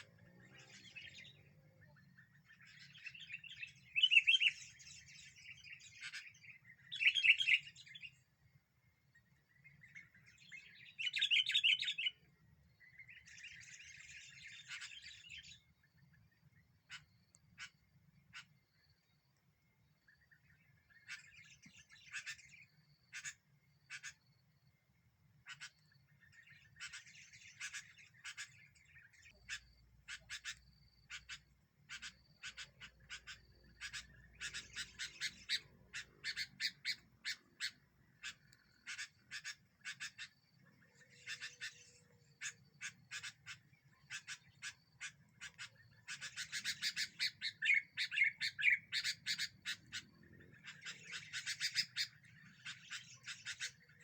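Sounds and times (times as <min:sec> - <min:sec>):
bulbuls chirping: 0:00.0 - 0:19.2, 0:19.9 - 0:24.5, 0:25.2 - 0:54.0.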